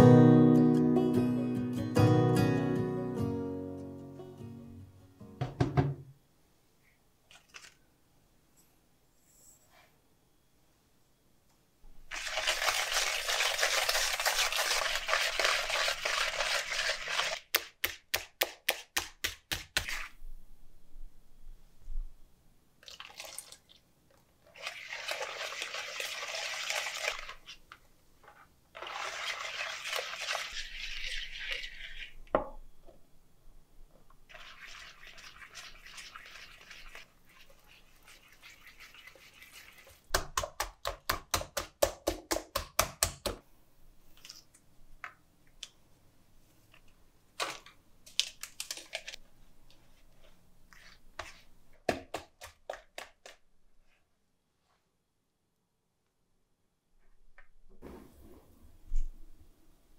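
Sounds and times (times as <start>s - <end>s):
batter pouring into bowl: 12.1s - 17.5s.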